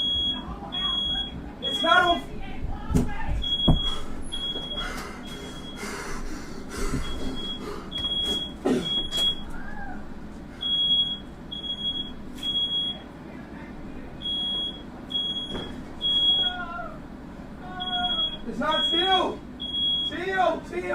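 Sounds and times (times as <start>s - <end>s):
smoke alarm beeping: 0.0s - 2.3s, 3.4s - 5.8s, 6.9s - 9.6s, 10.6s - 13.1s, 14.2s - 16.6s, 17.8s - 20.3s.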